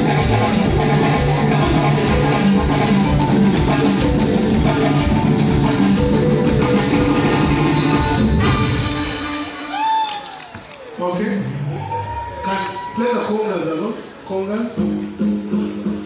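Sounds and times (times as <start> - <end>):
bass guitar: 0.0 - 9.5
drum kit: 0.0 - 9.8
electric guitar: 0.0 - 10.0.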